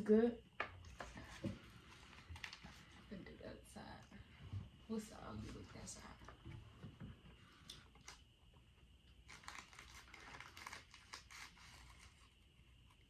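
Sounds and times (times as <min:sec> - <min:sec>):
snack wrapper crinkling: 0:09.1 - 0:12.4.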